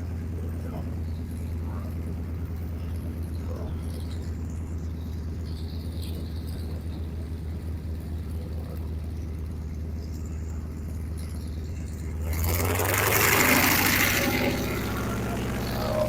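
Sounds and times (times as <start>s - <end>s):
propeller aircraft drone: 0.0s - 16.0s
aircraft rushing past: 12.2s - 16.0s.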